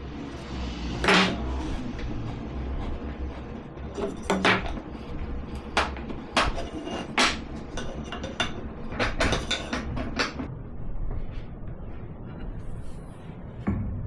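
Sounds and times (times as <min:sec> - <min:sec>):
hand tools knocking on wood: 0:03.8 - 0:10.5.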